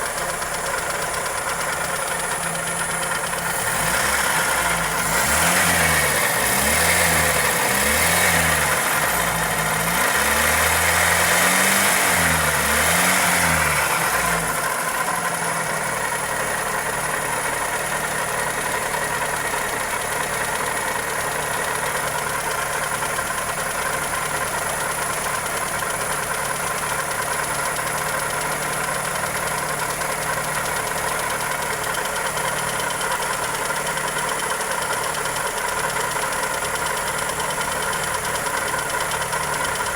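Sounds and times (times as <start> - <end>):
car engine revving and idling: 0.0 - 39.9
engine ticking knock: 17.3 - 39.9.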